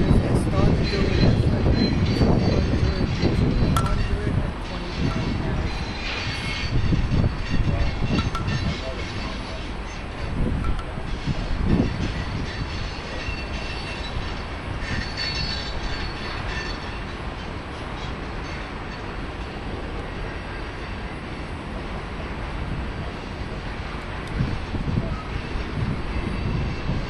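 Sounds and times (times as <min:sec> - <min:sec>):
train wheels rumbling on track: 0:00.0 - 0:27.0
high wheel squeal: 0:11.1 - 0:19.3.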